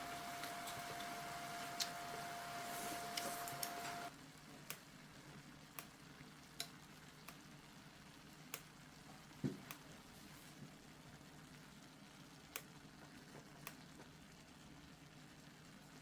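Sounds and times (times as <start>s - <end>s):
loud hiss with hum: 0.0s - 4.1s
food sizzling in a pan: 0.0s - 16.0s.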